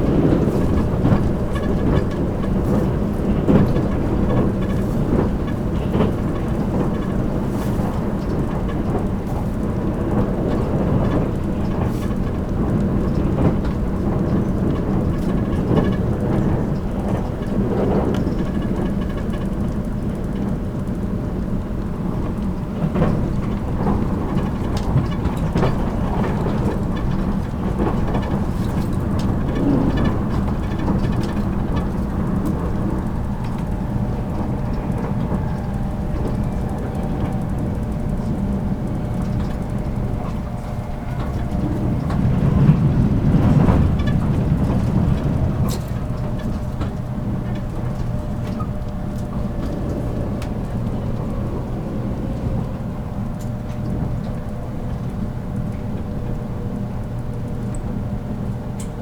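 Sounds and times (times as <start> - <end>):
train wheels rumbling on rails: 0.0 - 59.0.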